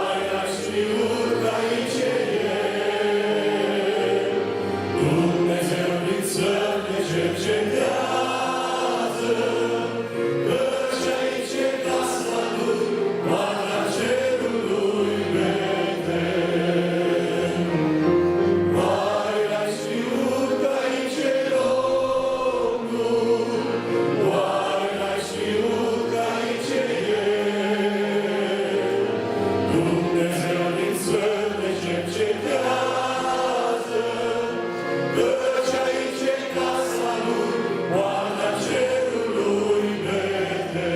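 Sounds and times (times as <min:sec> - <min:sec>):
church choir singing a hymn: 0:00.0 - 0:40.9.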